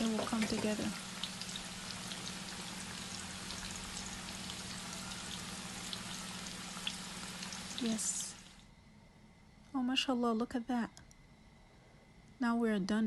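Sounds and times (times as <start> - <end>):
deep-frying sizzle with pops: 0.0 - 8.7.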